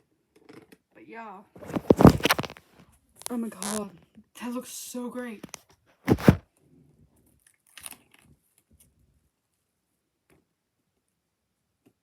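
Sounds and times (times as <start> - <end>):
plastic packaging crinkling: 1.6 - 2.6.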